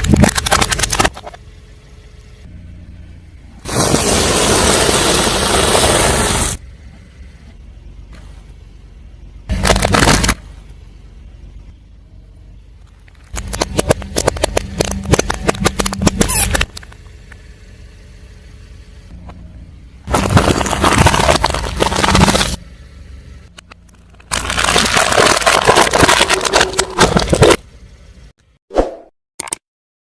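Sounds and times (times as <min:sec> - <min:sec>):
sharp cracks and pops: 0:00.0 - 0:01.4, 0:09.5 - 0:10.5, 0:12.9 - 0:17.4, 0:23.5 - 0:27.6
low engine hum: 0:00.0 - 0:28.6
tyre crushing objects: 0:20.1 - 0:22.6, 0:24.2 - 0:27.6.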